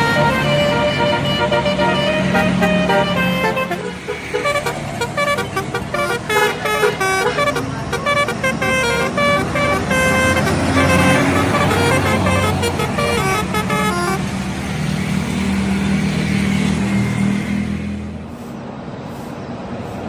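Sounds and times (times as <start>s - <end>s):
bus horn playing quick melody: 0.0s - 14.3s
bus engine rumbling: 0.0s - 20.0s.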